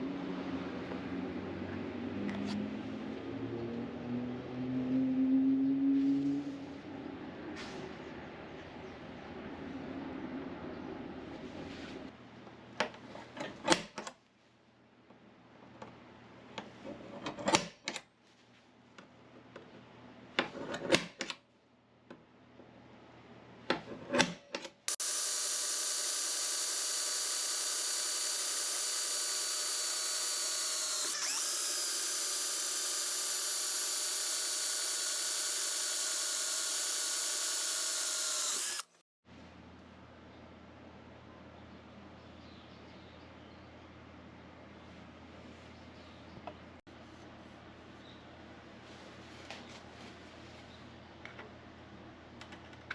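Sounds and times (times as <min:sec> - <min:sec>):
angle grinder running: 0:24.9 - 0:39.0.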